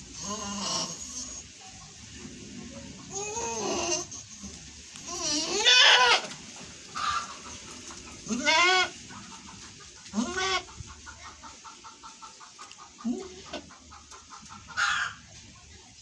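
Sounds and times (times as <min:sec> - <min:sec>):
hens clucking: 0:00.0 - 0:16.0
goat bleating: 0:03.1 - 0:06.3, 0:08.2 - 0:08.9, 0:10.1 - 0:10.7.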